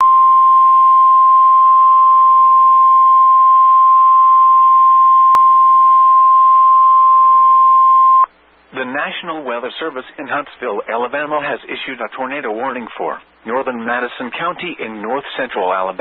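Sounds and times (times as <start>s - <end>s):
steady alarm tone: 0.0s - 8.3s.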